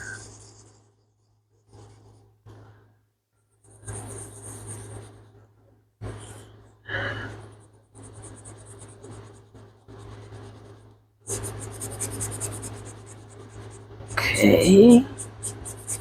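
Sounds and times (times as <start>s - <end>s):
steady low hum: 0.0s - 16.0s
ink pad scraping paper: 3.7s - 5.3s, 6.0s - 16.0s.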